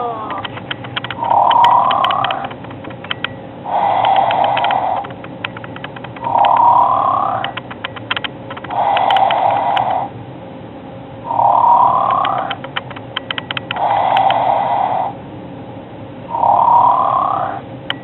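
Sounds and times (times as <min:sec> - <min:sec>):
quick clicks: 0:00.2 - 0:10.0, 0:12.1 - 0:14.4
toy snoring: 0:01.1 - 0:02.6, 0:03.7 - 0:05.1, 0:06.2 - 0:07.6, 0:08.6 - 0:10.1, 0:11.3 - 0:12.6, 0:13.7 - 0:15.2, 0:16.3 - 0:17.6.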